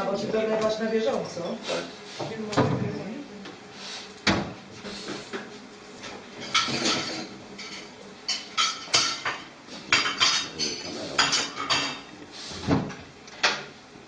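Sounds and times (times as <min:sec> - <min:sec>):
kitchenware clinking and clattering: 0:06.4 - 0:12.1.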